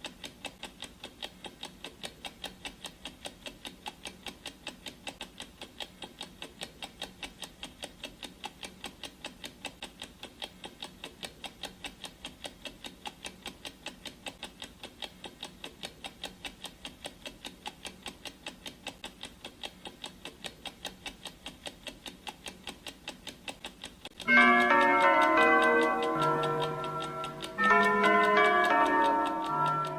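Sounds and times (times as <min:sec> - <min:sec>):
clock ticking: 0:00.0 - 0:29.9
gong striking and ringing: 0:24.3 - 0:29.9.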